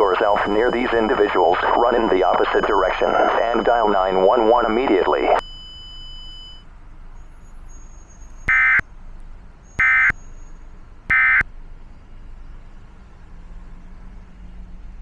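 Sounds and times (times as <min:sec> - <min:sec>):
digital data bursts: 0:00.0 - 0:05.4, 0:08.5 - 0:08.8, 0:09.8 - 0:10.2, 0:11.1 - 0:11.4.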